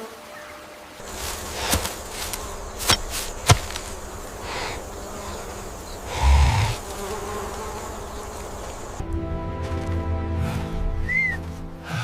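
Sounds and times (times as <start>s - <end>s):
insects buzzing: 0.0s - 9.9s.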